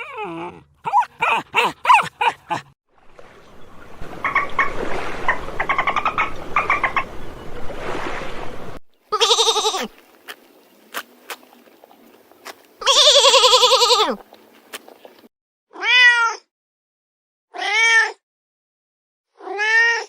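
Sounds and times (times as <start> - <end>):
high-pitched animal yelping: 0.0 - 2.6, 12.8 - 14.2, 15.7 - 16.5, 17.5 - 18.2, 19.4 - 20.0
drawn-out wavering animal cries: 9.1 - 10.0, 11.5 - 15.2.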